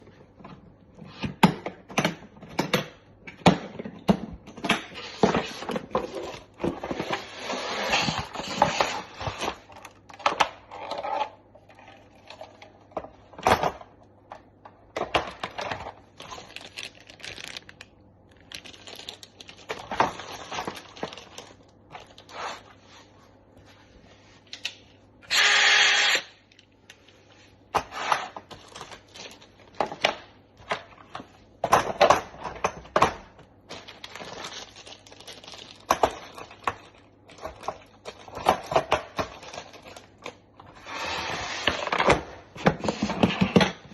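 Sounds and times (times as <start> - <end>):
cardboard and plastic rustling: 5.0 - 13.8, 14.9 - 24.6, 27.0 - 40.8.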